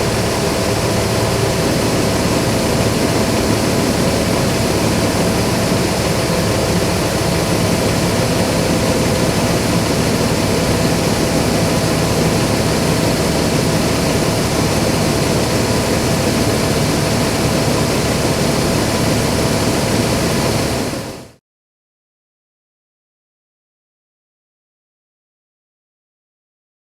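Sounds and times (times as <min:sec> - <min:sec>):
combine harvester running: 0:00.0 - 0:21.4.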